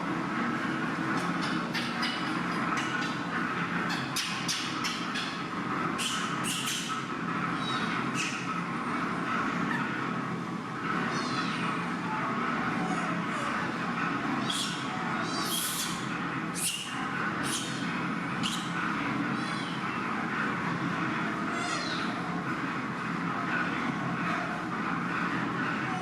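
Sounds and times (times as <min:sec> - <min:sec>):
steady background hum: 0:00.0 - 0:26.0
baby monkey crying: 0:06.0 - 0:06.9, 0:14.4 - 0:18.7.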